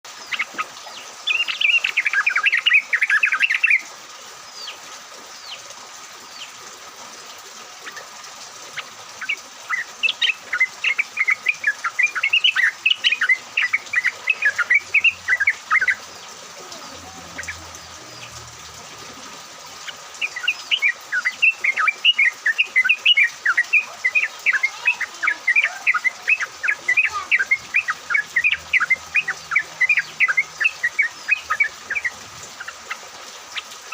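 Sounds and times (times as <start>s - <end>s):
bulbuls chattering song: 8.7s - 33.9s.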